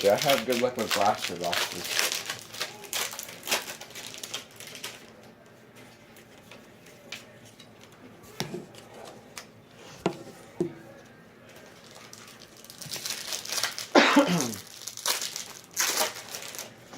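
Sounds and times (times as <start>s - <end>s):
cards and wrappers rustling: 0.0s - 7.8s, 11.5s - 16.9s.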